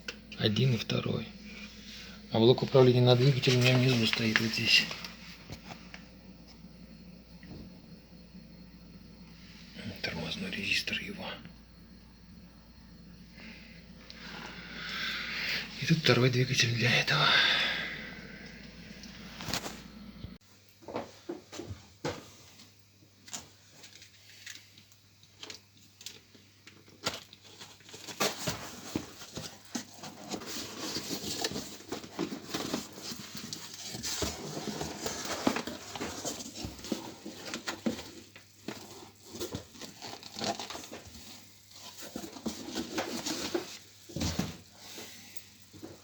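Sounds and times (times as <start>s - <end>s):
rustling and crinkling handling: 0.2s - 6.7s, 25.4s - 46.0s.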